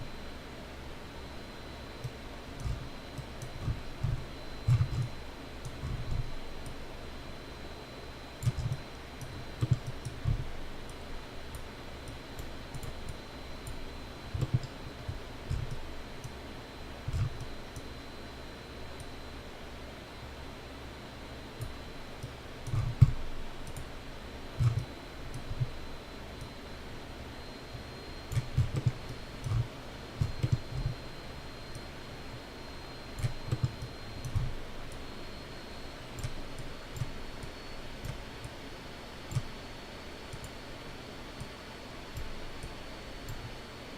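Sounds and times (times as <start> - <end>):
faint high-pitched whine: 0.0 - 43.9
computer mouse clicking: 2.0 - 6.8, 8.4 - 16.4, 17.0 - 17.9, 21.6 - 23.9, 24.6 - 25.7, 28.3 - 31.0, 33.2 - 35.0, 36.1 - 38.5, 39.3 - 39.5, 40.3 - 40.6.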